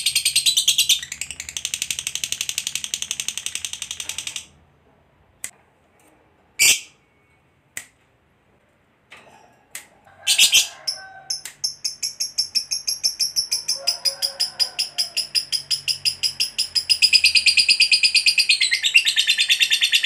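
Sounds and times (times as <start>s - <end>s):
lovebird chattering call: 10.3s - 20.0s.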